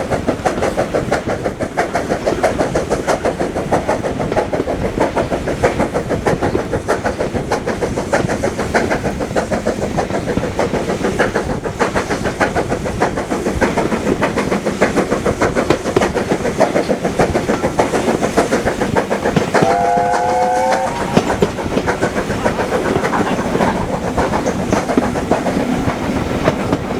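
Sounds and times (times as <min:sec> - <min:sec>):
train clattering: 0:00.0 - 0:26.9
train whistle blast: 0:19.6 - 0:21.5.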